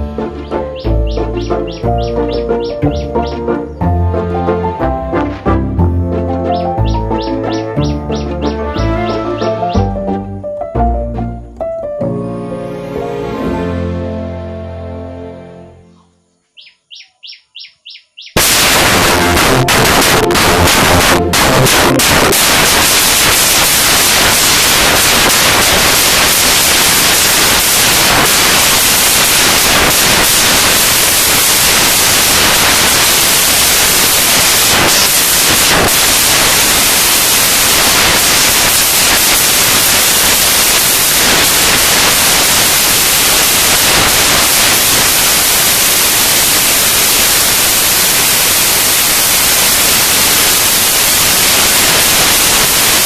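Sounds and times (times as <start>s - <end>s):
loud static-like hiss: 0.0s - 3.9s, 18.4s - 53.0s.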